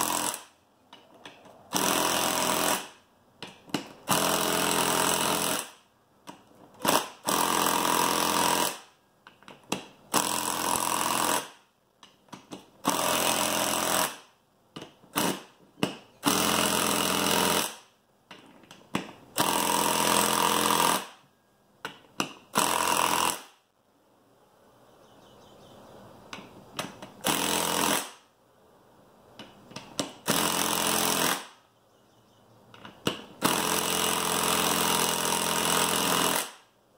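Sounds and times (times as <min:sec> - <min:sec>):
impact driver hammering: 0:01.7 - 0:08.8, 0:21.8 - 0:23.6, 0:26.4 - 0:28.2, 0:32.8 - 0:36.6.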